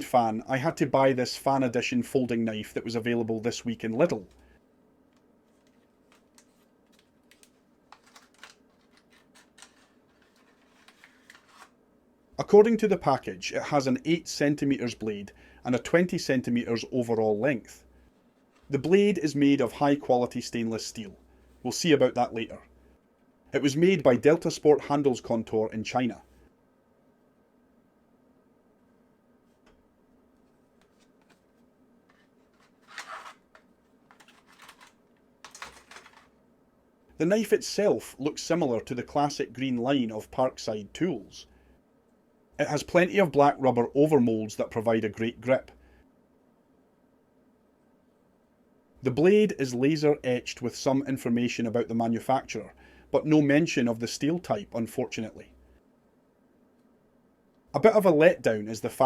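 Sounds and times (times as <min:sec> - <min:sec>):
packaging rustling: 0:05.4 - 0:11.8, 0:30.4 - 0:36.4.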